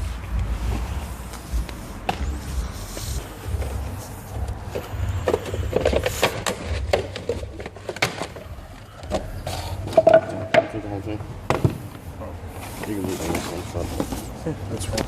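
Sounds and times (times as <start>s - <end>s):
low rumble: 0.0s - 7.6s
clicks and knocks of car parts: 4.5s - 12.1s.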